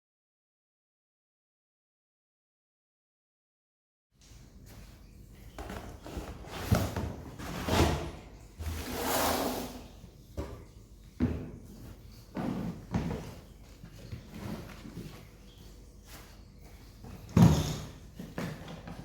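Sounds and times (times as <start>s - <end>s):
knocks and thuds of objects: 17.3s - 18.9s.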